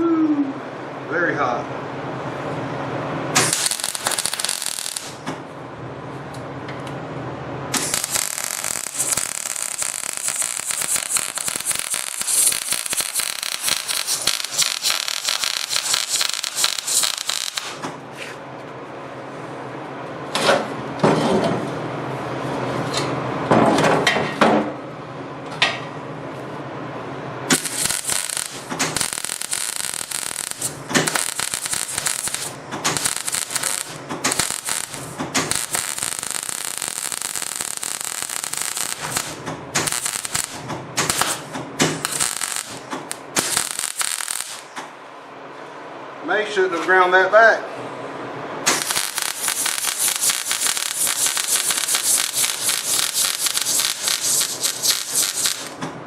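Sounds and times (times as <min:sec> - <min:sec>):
welding arc crackling: 0:03.3 - 0:05.3, 0:07.7 - 0:17.8, 0:27.5 - 0:44.8, 0:48.6 - 0:55.8.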